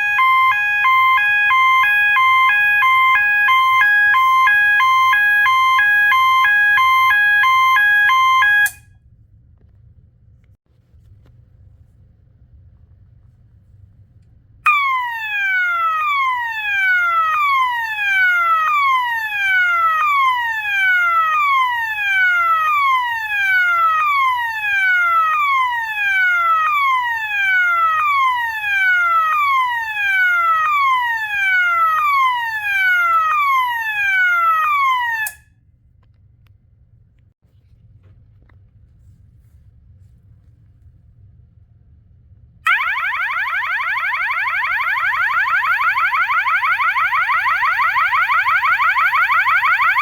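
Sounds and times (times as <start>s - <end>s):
fire alarm falling sweep tone: 0.0s - 8.9s, 14.7s - 35.5s, 42.6s - 50.0s.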